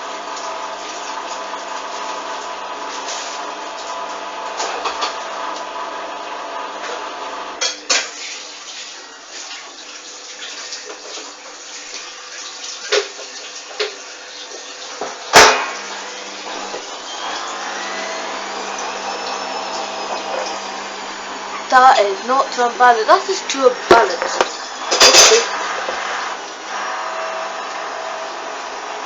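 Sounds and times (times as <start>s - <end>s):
washing machine drum turning: 12.8s - 26.6s
motor whine: 14.1s - 29.0s.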